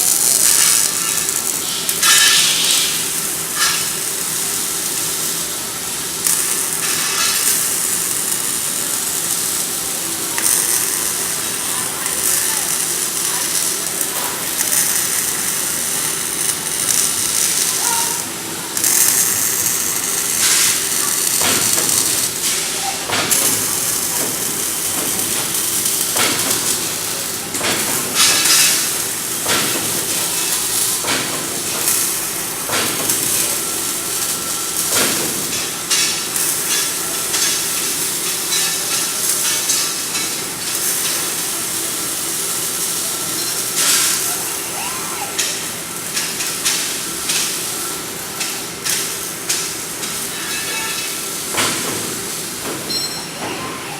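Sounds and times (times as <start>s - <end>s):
welding arc crackling hiss: 0.0s - 53.9s.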